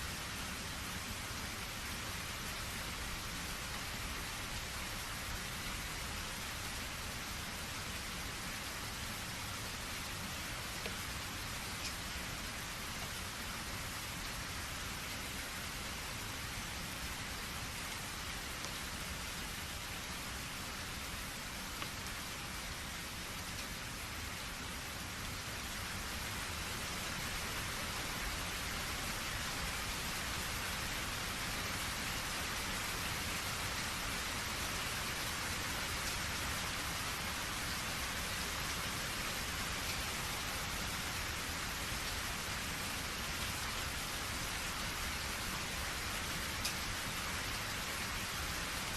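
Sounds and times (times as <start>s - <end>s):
rain falling: 0.0s - 48.9s.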